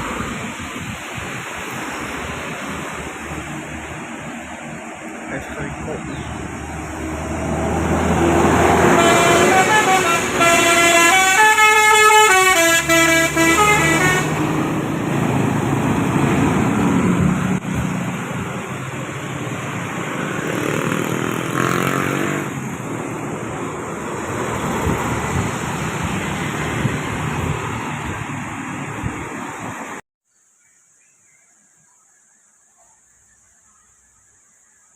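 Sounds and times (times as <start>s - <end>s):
traffic passing: 0.0s - 30.0s
multi-tone bus horn melody: 8.1s - 14.9s.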